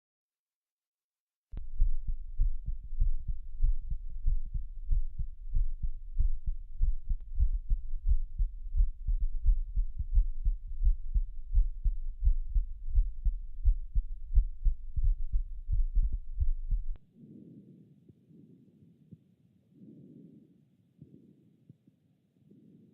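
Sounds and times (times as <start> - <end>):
heartbeat thumps: 1.6 - 17.0.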